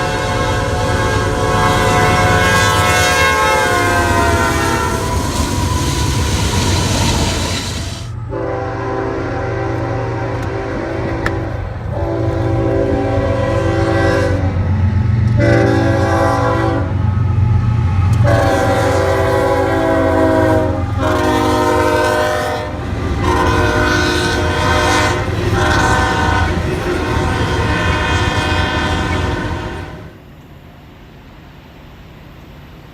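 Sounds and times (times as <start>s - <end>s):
locomotive air horn blasts: 0.0s - 6.3s, 7.8s - 30.2s
low rumble of passing train: 0.0s - 32.9s.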